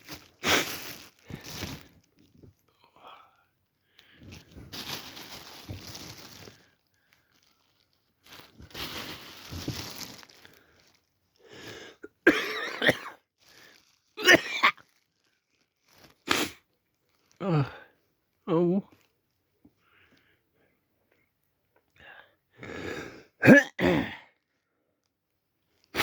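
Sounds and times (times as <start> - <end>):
man coughing: 12.2 - 13.2, 14.2 - 14.8, 23.4 - 24.3.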